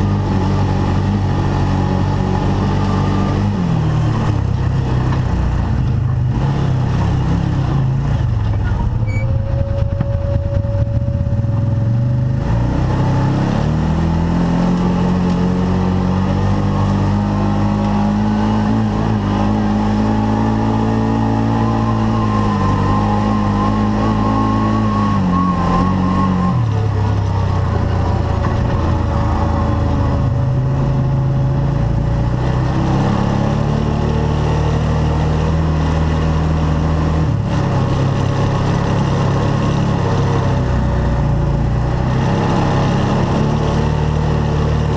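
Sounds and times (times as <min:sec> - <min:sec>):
engine revving: 0:00.0 - 0:44.9.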